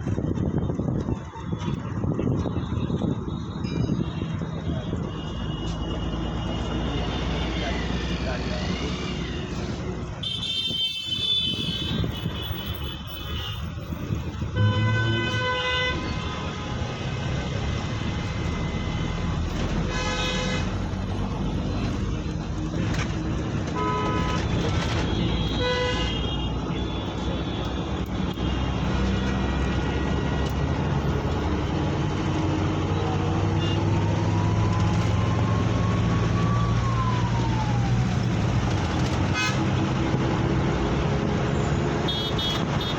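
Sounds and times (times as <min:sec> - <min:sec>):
road traffic drone: 0:00.0 - 0:42.9
vehicle horn toots: 0:10.2 - 0:13.6, 0:14.6 - 0:16.5, 0:19.9 - 0:20.7, 0:23.8 - 0:27.1, 0:39.3 - 0:39.6, 0:42.1 - 0:42.9.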